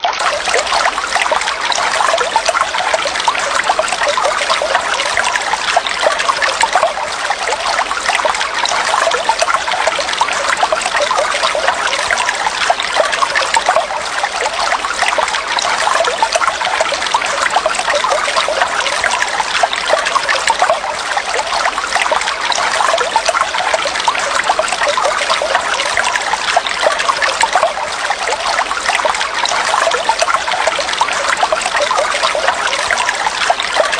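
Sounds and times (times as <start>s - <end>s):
water trickling and babbling: 0.0s - 33.9s.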